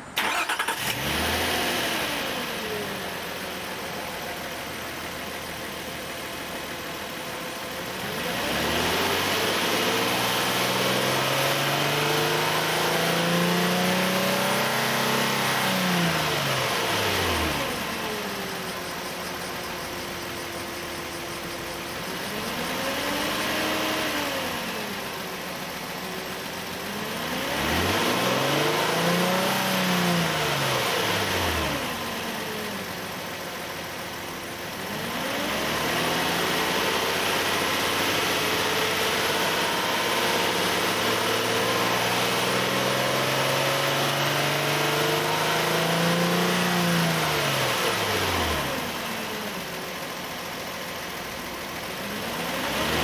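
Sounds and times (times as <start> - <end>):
car engine revving: 0.2 - 33.0, 51.7 - 53.0.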